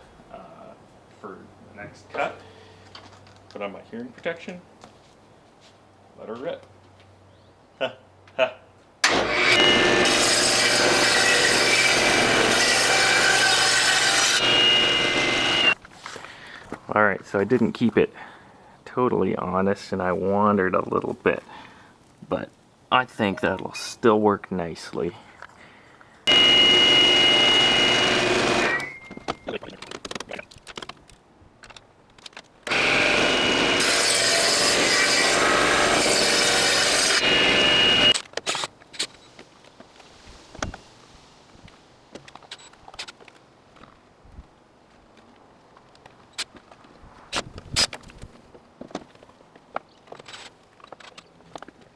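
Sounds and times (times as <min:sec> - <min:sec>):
table saw cutting wood: 0:09.0 - 0:15.8, 0:26.3 - 0:29.0, 0:32.7 - 0:38.2.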